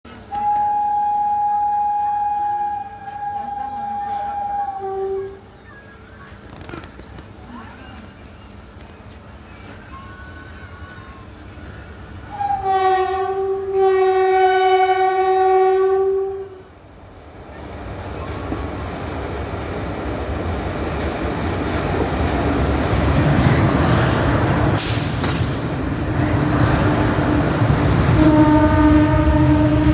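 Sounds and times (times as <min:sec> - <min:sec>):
train rumbling and clattering: 0:00.1 - 0:29.9
locomotive horn blasts: 0:00.2 - 0:05.5, 0:12.3 - 0:16.7, 0:27.9 - 0:29.9.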